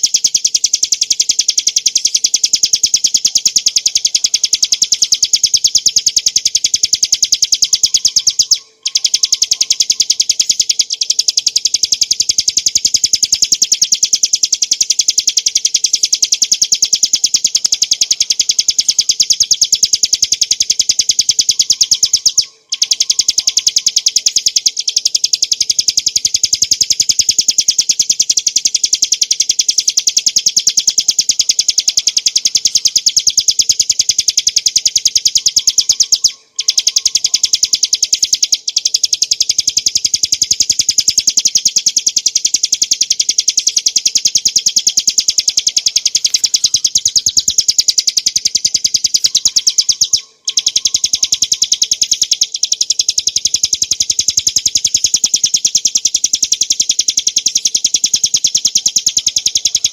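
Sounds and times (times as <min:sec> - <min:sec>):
bird singing sharp chipping notes: 0:28.1 - 0:59.9.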